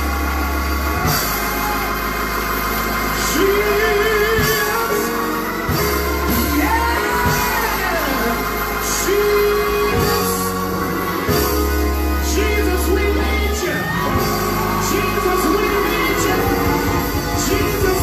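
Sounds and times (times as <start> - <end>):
gospel band playing: 0.0 - 18.0.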